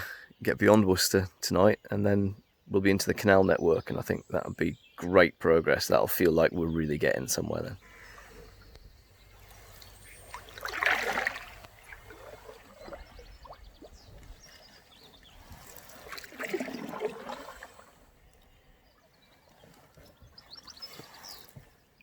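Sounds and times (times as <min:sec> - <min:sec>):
paddle strokes in water: 0:07.8 - 0:22.0.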